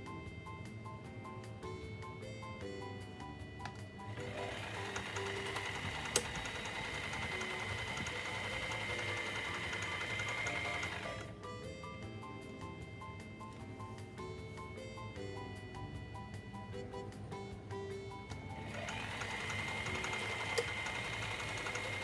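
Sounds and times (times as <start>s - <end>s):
background music: 0.0s - 22.0s
sewing machine whining: 4.0s - 11.4s, 18.4s - 22.0s.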